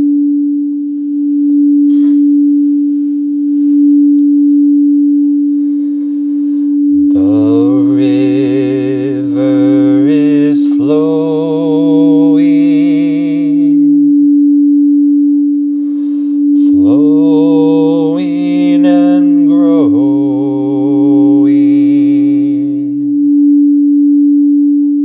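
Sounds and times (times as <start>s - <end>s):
low voice chanting: 7.0s - 14.1s, 16.4s - 23.2s.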